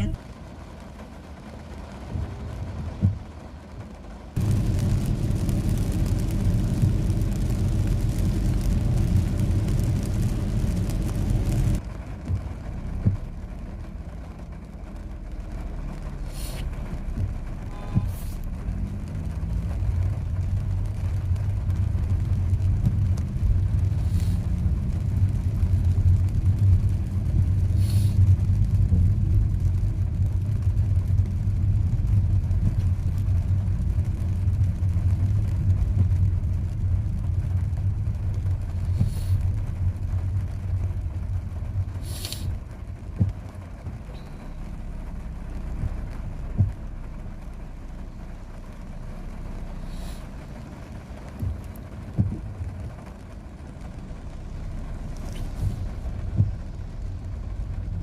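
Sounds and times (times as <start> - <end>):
car engine and road rumble: 0.0 - 58.0
brief hissing: 16.3 - 16.7, 27.8 - 28.2, 42.0 - 42.5, 49.8 - 50.3.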